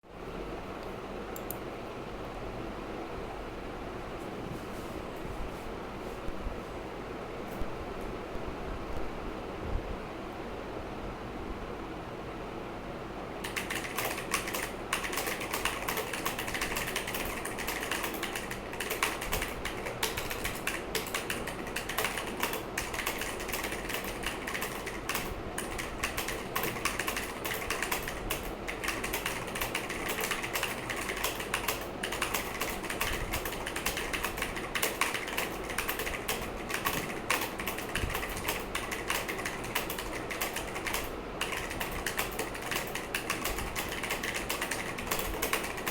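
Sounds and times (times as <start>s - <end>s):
mechanical keyboard typing: 13.4s - 45.9s.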